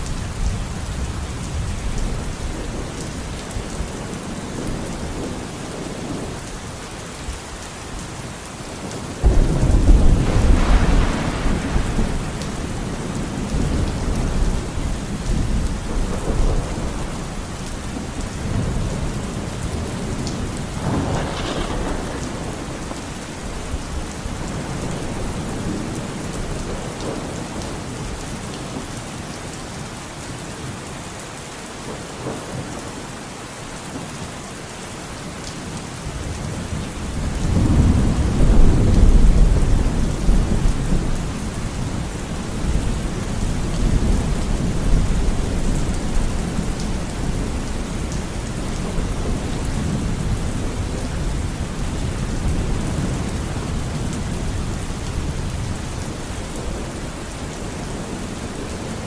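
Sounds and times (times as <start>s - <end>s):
steady rain falling: 0.0s - 59.0s
low rumble of thunder: 8.8s - 28.8s, 36.2s - 59.0s
loud thunderclap: 9.2s - 17.1s, 20.4s - 27.2s.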